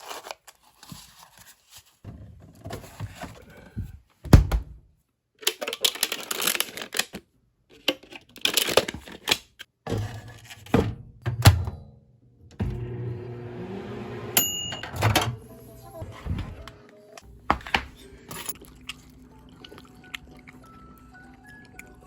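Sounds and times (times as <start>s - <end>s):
packaging rustling and tearing: 0.0s - 2.0s, 5.4s - 7.2s, 7.8s - 9.6s.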